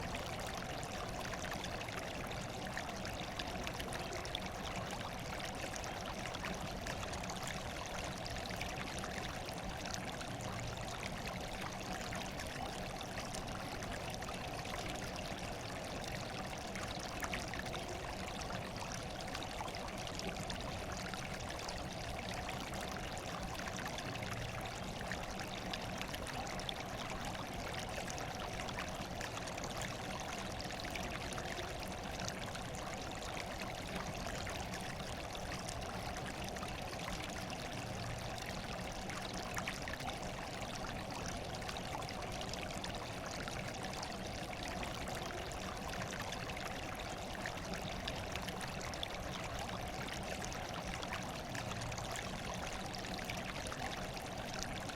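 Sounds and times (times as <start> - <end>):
stream water pouring and trickling: 0.0 - 54.9.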